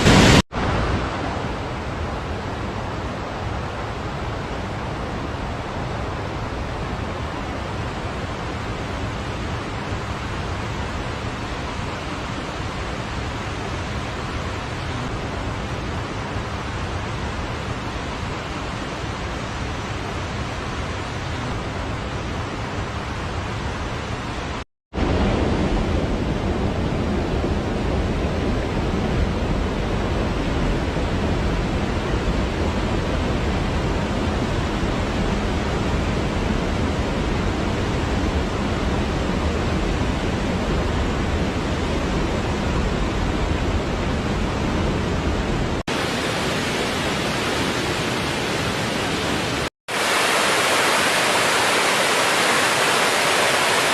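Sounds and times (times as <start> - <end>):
waterfall rushing: 0.0 - 20.3, 45.7 - 53.9.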